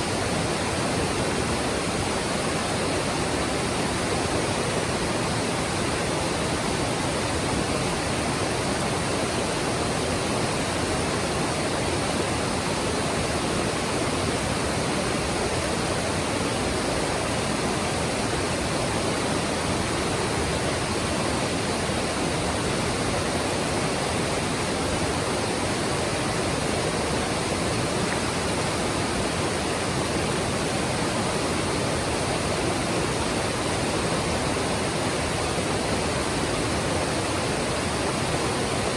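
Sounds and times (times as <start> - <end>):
stream water rushing: 0.0 - 38.9.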